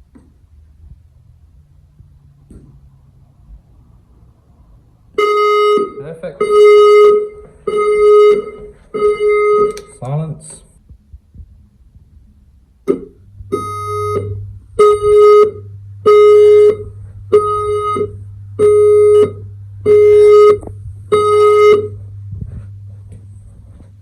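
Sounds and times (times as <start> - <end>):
fire alarm beeping: 5.2 - 10.0, 12.9 - 22.0.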